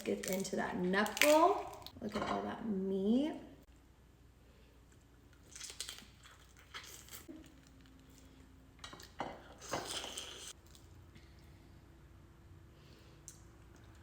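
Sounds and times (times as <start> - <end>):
crab shell crackling and squishing: 5.2 - 8.4.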